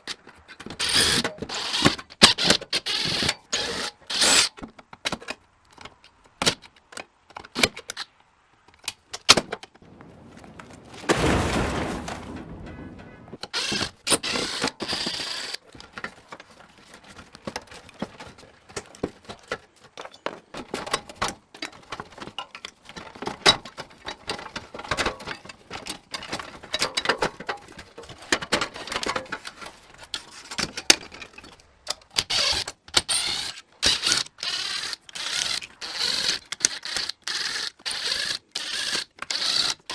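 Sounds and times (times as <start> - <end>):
sharp clicks: 32.2 - 39.9.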